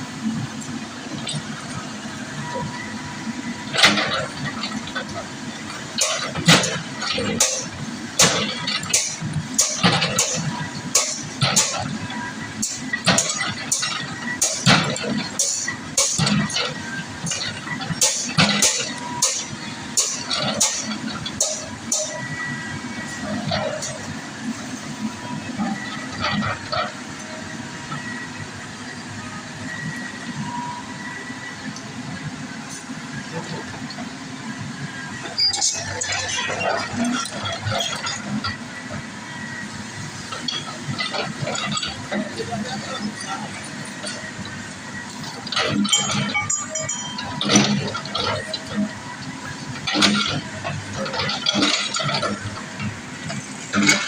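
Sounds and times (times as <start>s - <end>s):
diesel machinery rumbling: 0.0s - 54.0s
excavator engine running: 0.0s - 54.0s
sharp metallic clanks: 45.5s - 48.8s.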